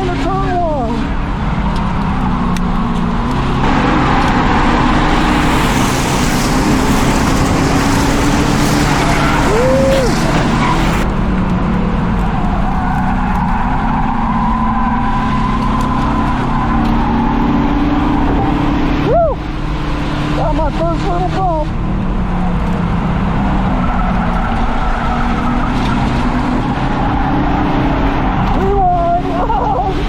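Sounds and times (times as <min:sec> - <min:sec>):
car engine running hard: 0:00.0 - 0:30.0
road and wind noise: 0:00.0 - 0:30.0
brief squeal: 0:03.7 - 0:11.1.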